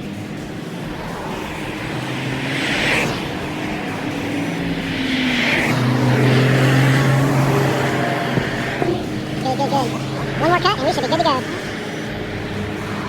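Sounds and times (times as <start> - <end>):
cars passing with tyre whoosh: 0.0 - 13.0
engine drone: 0.0 - 13.0.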